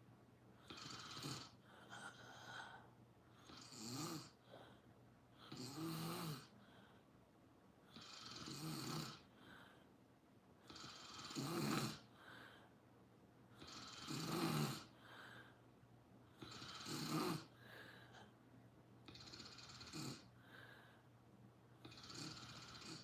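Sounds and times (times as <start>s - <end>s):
soft breathing: 0.6s - 5.6s, 6.4s - 8.4s, 9.1s - 11.3s, 12.0s - 14.2s, 14.8s - 23.0s
person snoring: 0.7s - 2.8s, 3.4s - 4.4s, 5.5s - 6.5s, 7.9s - 9.3s, 10.7s - 12.1s, 13.6s - 14.9s, 16.4s - 17.5s, 19.1s - 20.3s, 21.8s - 23.0s.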